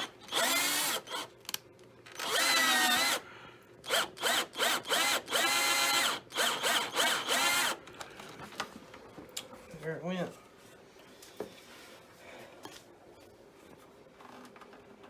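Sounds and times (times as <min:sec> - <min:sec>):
power drill motor whine: 0:00.0 - 0:01.3, 0:02.1 - 0:03.2, 0:03.9 - 0:07.8.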